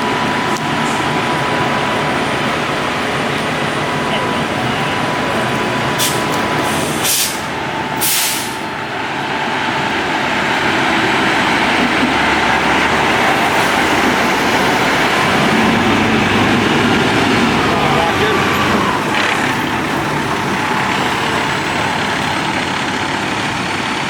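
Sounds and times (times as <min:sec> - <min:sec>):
truck engine running: 0:00.0 - 0:24.0
air brake hisses: 0:06.0 - 0:08.7.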